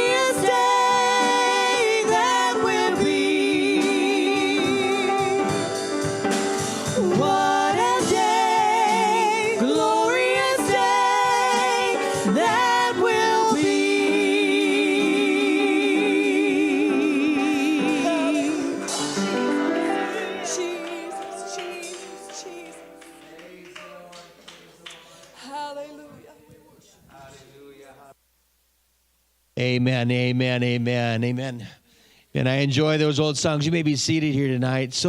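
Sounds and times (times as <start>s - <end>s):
person singing a hymn: 0.0s - 24.0s
instrumental accompaniment: 0.0s - 24.2s.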